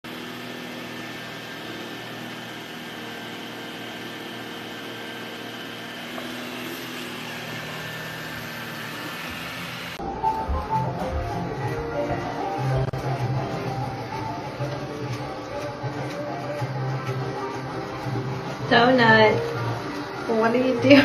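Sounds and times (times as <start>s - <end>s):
robot vacuum motor and brush: 0.1s - 21.0s
music: 10.0s - 21.0s.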